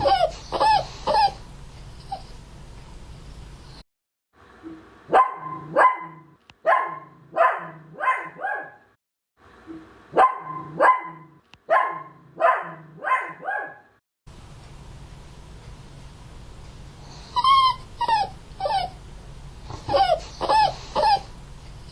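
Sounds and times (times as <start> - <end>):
dog barking: 5.1 - 8.8, 10.1 - 13.9.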